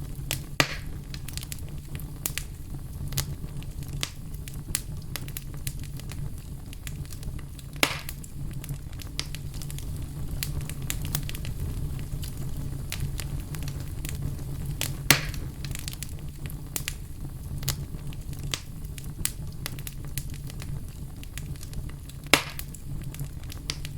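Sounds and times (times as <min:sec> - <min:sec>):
loud fire pops: 0:00.0 - 0:23.9
wood fire crackling: 0:00.0 - 0:23.9.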